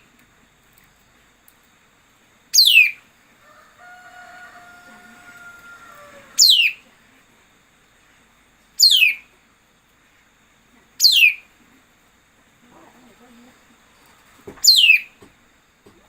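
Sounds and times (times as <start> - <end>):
songbird calls descending: 2.6 - 6.9, 8.8 - 9.3, 11.0 - 11.4, 14.6 - 15.2.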